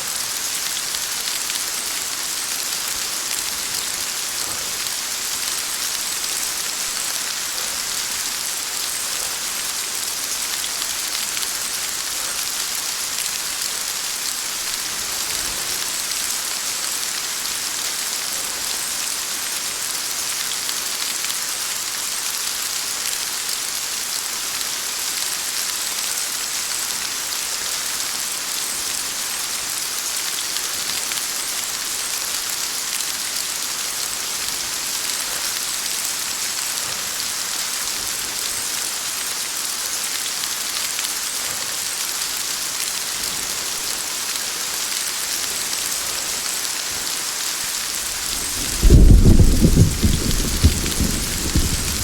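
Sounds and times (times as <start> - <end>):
heavy rain hissing: 0.0 - 52.0
thunder clap rumbling: 48.1 - 52.0.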